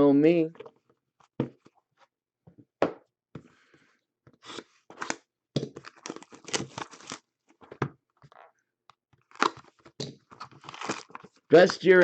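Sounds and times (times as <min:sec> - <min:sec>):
cards rustling: 0:05.8 - 0:07.7, 0:09.2 - 0:12.0
plastic packaging clicks and crackles: 0:09.2 - 0:11.8.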